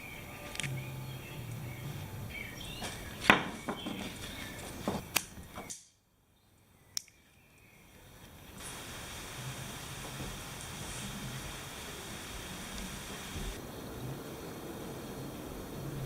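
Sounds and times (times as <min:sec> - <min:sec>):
clicks of small items handled: 0:00.4 - 0:00.8.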